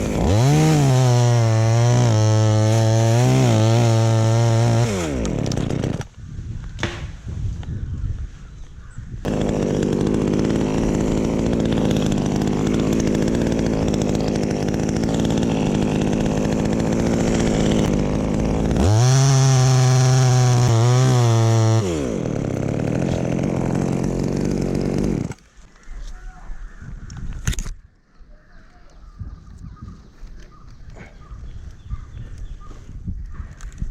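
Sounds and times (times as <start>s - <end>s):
chainsaw cutting wood: 0.0s - 6.1s, 9.2s - 25.6s.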